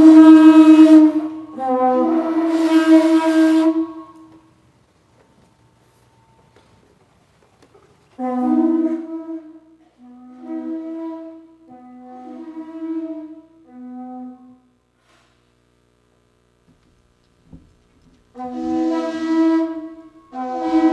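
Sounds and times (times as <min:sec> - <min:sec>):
wind instrument low held notes: 0:00.0 - 0:06.8, 0:08.1 - 0:14.8, 0:18.3 - 0:20.9.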